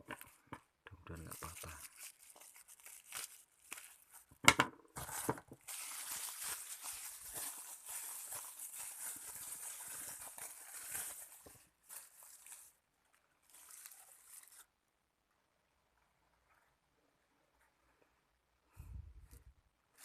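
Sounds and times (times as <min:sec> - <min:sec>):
packaging crinkling and rustling: 0:01.1 - 0:14.7.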